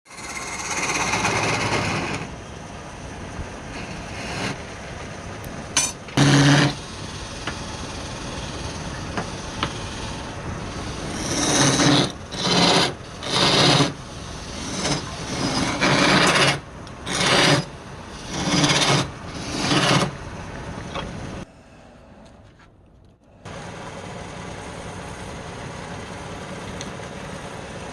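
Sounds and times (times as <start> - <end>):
wood being rasped by hand: 0.1 - 2.3, 3.7 - 4.6, 6.2 - 20.2
machine hum: 0.1 - 27.9.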